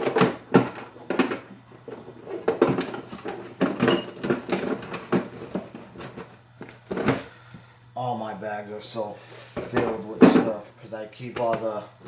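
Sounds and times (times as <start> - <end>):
metal tools clinking and rattling: 1.1 - 7.3.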